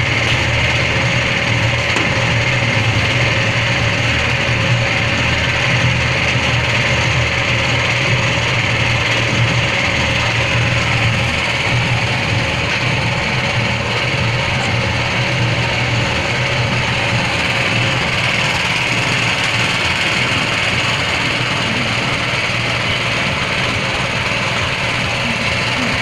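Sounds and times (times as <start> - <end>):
feed mixing machine running: 0.0 - 26.0.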